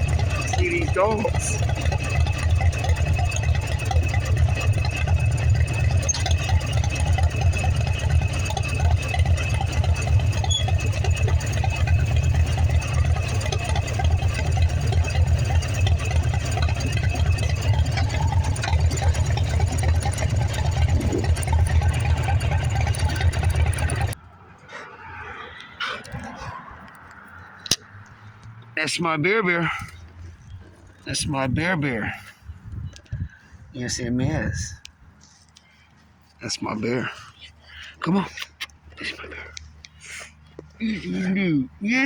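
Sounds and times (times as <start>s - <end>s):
motorcycle engine running: 0.0s - 24.2s.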